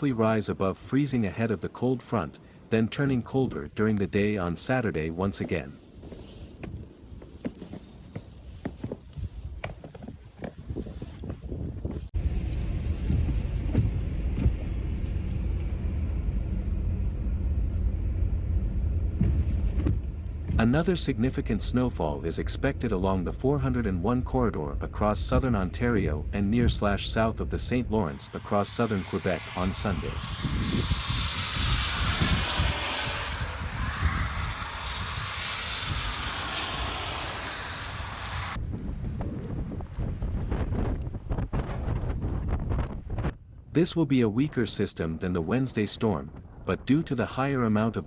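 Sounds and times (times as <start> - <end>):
outdoor rushing noise: 11.8 - 43.4
traffic rumble: 12.1 - 39.2.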